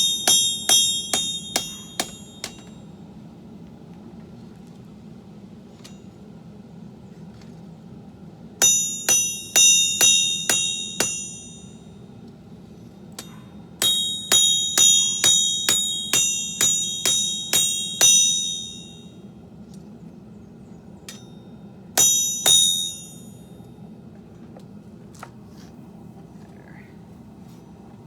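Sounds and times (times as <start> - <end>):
hammer striking steel on anvil: 0.0 - 2.8, 8.6 - 11.8, 13.2 - 19.2, 21.1 - 21.4, 22.0 - 23.4
steady low hum: 0.0 - 28.0.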